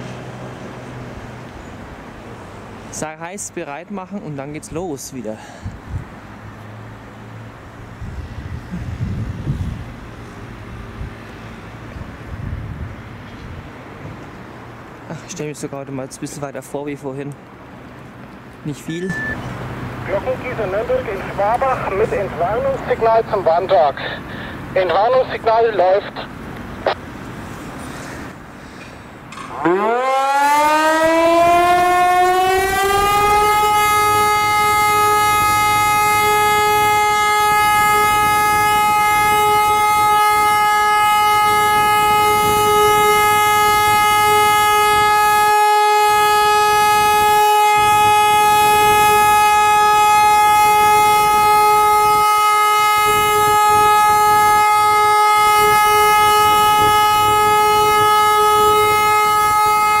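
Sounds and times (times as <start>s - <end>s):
compressed-air siren: 29.4s - 60.0s.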